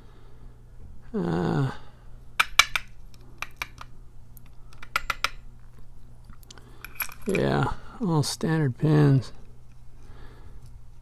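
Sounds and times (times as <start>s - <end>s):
lock pins clicking: 2.4s - 5.8s, 6.4s - 7.6s.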